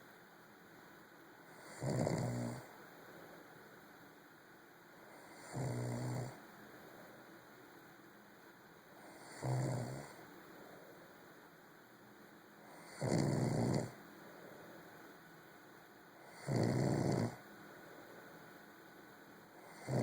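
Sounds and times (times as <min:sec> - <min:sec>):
snoring: 0:01.6 - 0:02.7, 0:05.2 - 0:06.4, 0:09.0 - 0:10.2, 0:12.7 - 0:14.0, 0:16.2 - 0:17.4, 0:19.6 - 0:20.0.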